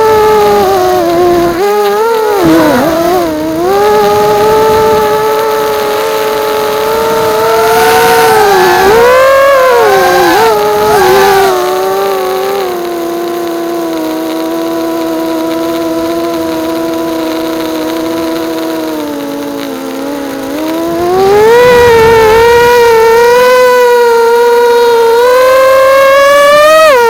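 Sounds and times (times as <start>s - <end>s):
quadcopter motors whining: 0.0s - 27.0s.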